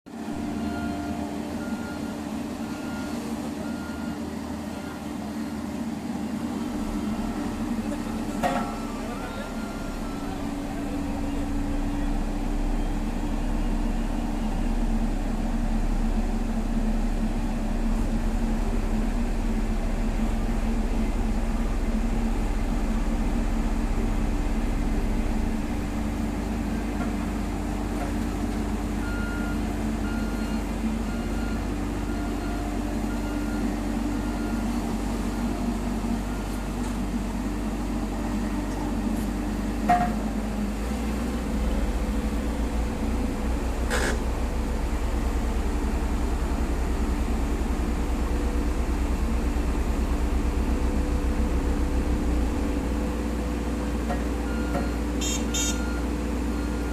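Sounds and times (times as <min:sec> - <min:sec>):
road roller diesel engine droning: 0:00.1 - 0:56.9
faint beeps: 0:06.8 - 0:14.9.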